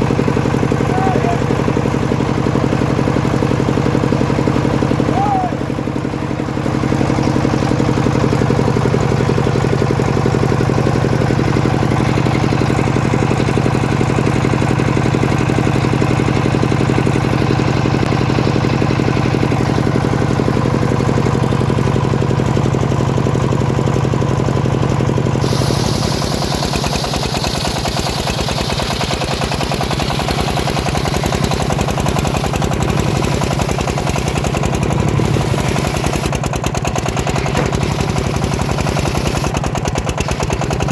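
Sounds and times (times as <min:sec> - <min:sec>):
sawmill engine humming: 0:00.0 - 0:40.9
saw blade cutting log: 0:25.4 - 0:40.9.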